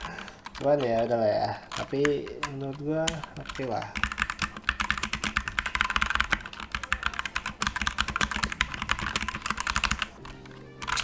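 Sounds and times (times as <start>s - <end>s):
fast typing on mechanical keyboard: 0.0s - 11.0s.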